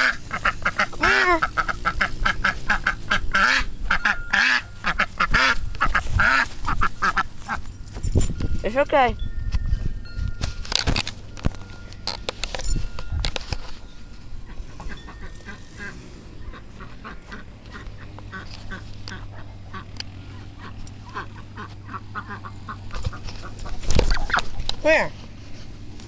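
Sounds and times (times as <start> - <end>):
ducks quacking: 0.0 - 7.6, 14.5 - 25.1.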